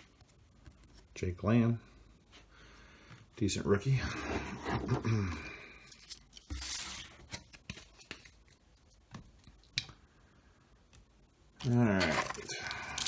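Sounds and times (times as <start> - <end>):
wrapper tearing: 11.6 - 13.0.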